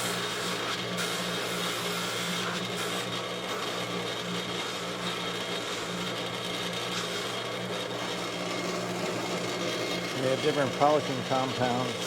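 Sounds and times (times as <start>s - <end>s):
buffing wheel motor humming: 3.6s - 12.0s.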